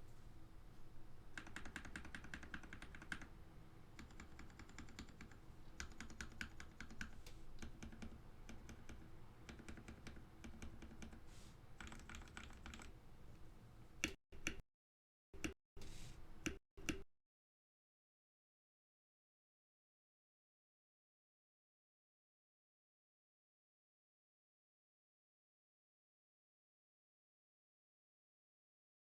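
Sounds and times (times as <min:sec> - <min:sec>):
mechanical keyboard typing: 0:01.4 - 0:03.3, 0:04.0 - 0:11.2, 0:11.8 - 0:12.9.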